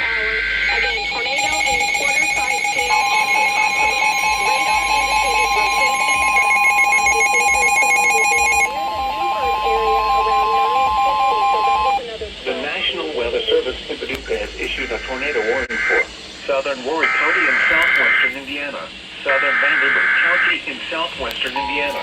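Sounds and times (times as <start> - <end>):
steady high alarm tone: 0.0 - 12.1, 21.5 - 22.0
music: 0.0 - 12.5.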